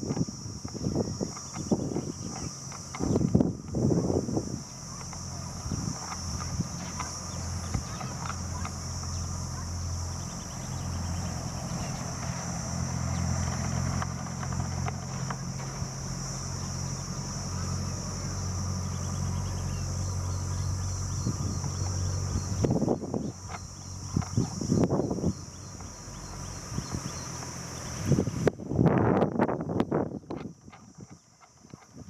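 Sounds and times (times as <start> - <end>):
low even hum: 0.0 - 30.3
high insect drone: 0.0 - 32.0
faint clicks: 4.9 - 16.0, 23.4 - 24.9.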